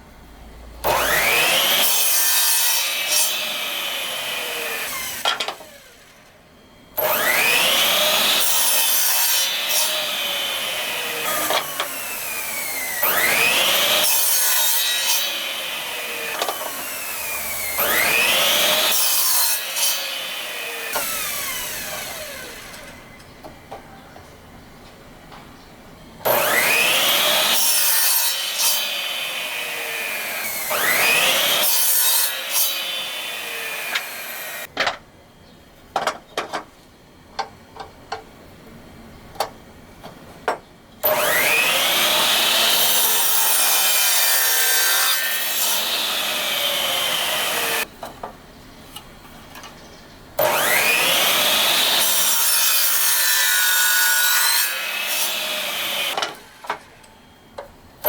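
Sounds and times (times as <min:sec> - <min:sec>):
electric power tool cutting wood: 0:00.8 - 0:06.1, 0:07.0 - 0:23.1, 0:26.3 - 0:34.7, 0:41.0 - 0:47.9, 0:50.4 - 0:56.9.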